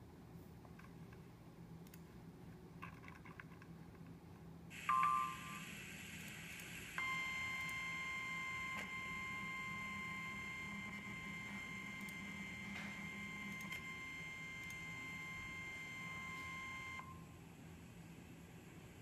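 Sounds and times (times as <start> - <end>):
alarm tone beep: 4.8 - 5.6.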